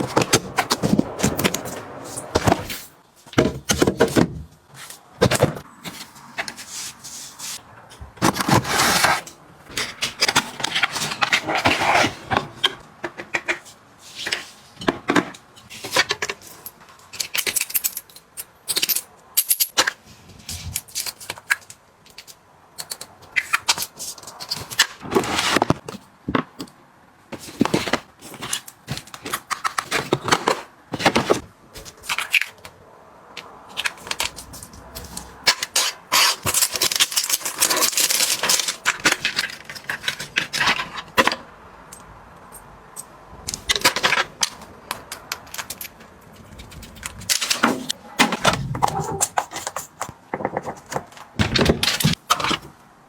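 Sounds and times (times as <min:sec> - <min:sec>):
items clicking and clattering: 0:00.0 - 0:06.7, 0:07.9 - 0:52.8.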